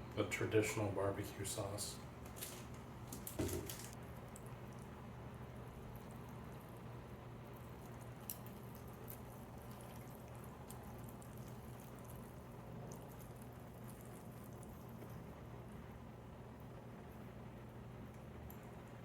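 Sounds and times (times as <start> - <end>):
steady low hum: 0.0 - 19.0
wet chewing sounds: 2.3 - 15.8.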